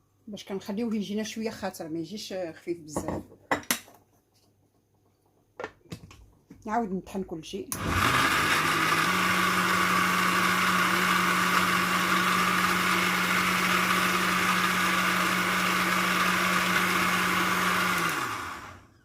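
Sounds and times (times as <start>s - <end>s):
electric blender running: 7.8s - 19.0s.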